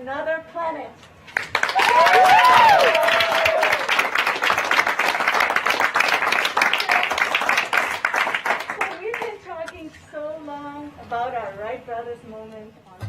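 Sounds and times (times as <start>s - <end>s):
woman speaking: 0.0s - 1.0s, 8.8s - 13.0s
group applause: 1.3s - 9.4s.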